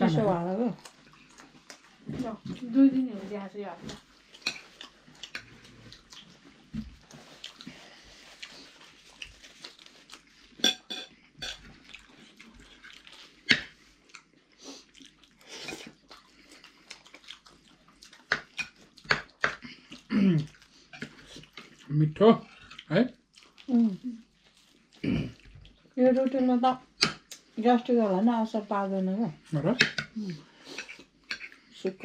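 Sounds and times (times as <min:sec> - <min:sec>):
people chewing food: 0:00.0 - 0:32.0.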